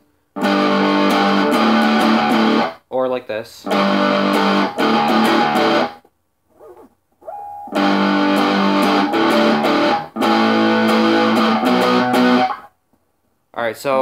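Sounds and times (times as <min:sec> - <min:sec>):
electric guitar strumming: 0:00.4 - 0:02.7, 0:03.7 - 0:06.0, 0:07.5 - 0:12.7.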